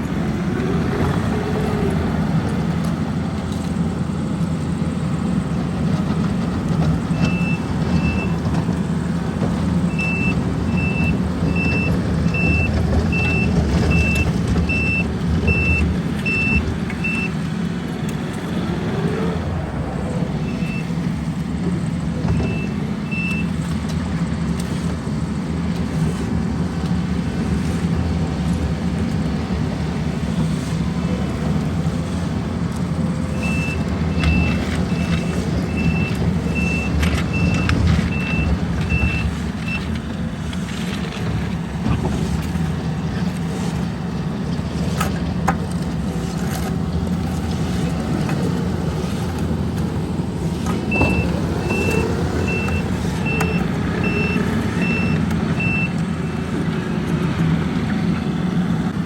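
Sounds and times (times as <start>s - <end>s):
diesel engines running: 0.0s - 59.0s
reversing alarm beeping: 7.1s - 8.4s, 9.8s - 17.4s, 20.4s - 21.0s, 22.3s - 23.5s, 33.3s - 39.9s, 50.9s - 56.0s.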